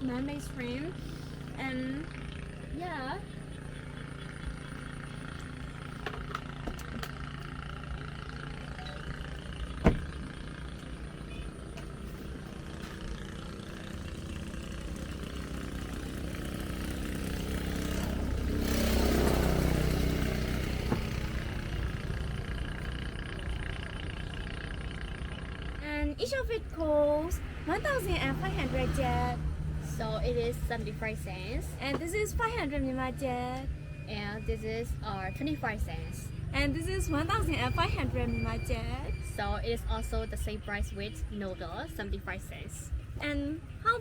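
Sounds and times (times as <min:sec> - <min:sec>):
motor vehicle passing: 0:00.0 - 0:44.0
low background hum: 0:20.2 - 0:44.0.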